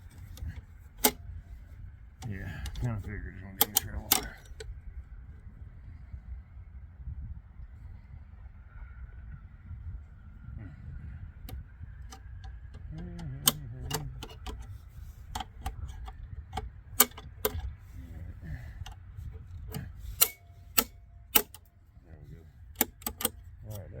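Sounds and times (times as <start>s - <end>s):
tools clinking on metal: 19.7s - 21.7s.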